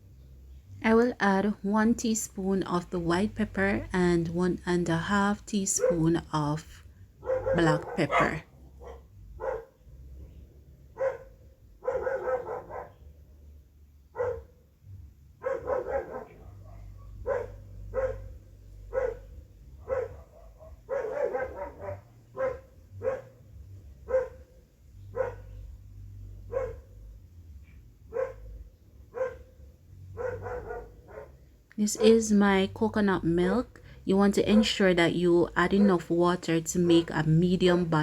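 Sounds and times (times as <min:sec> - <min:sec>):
dog barking: 0:05.8 - 0:06.2, 0:07.2 - 0:09.8, 0:10.9 - 0:13.1, 0:14.1 - 0:14.6, 0:15.4 - 0:25.7, 0:26.4 - 0:27.0, 0:28.1 - 0:31.4, 0:35.7 - 0:36.2.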